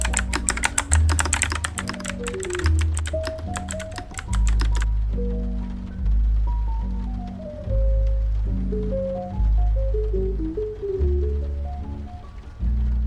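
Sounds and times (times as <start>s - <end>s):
mechanical keyboard typing: 0.0s - 4.9s.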